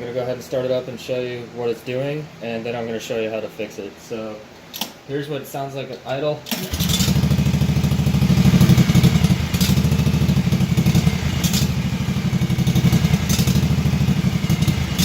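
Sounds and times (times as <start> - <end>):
engine crackle: 6.5 - 15.0
mower engine idling unevenly: 6.6 - 15.0.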